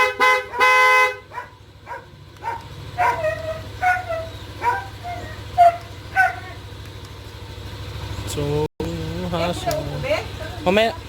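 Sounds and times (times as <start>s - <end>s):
dog barking: 0.2s - 6.6s.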